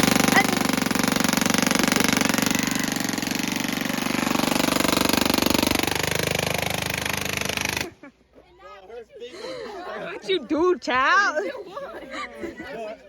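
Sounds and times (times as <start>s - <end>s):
rapid mechanical rattle: 0.0s - 8.0s.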